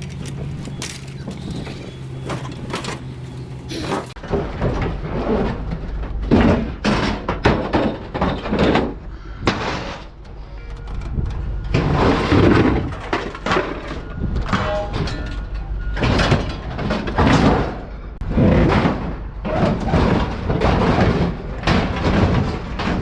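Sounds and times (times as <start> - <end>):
scrap metal scraping and clanking: 0.0 - 23.0.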